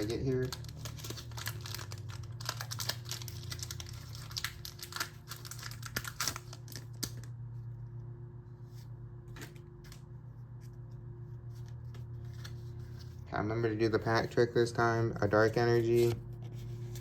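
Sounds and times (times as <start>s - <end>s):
foil wrapper crinkling and tearing: 0.0s - 7.4s.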